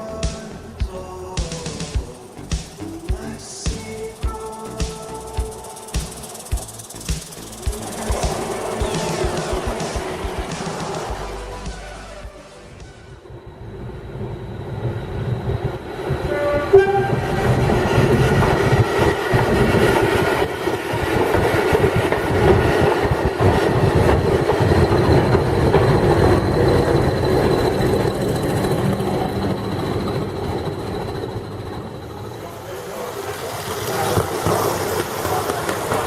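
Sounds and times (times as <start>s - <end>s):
train rumbling past: 0.0s - 36.0s
train whistle: 16.2s - 19.2s.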